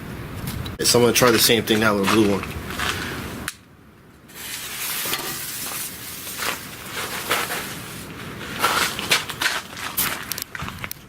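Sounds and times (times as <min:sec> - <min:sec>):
short crunches: 0:05.6 - 0:11.0.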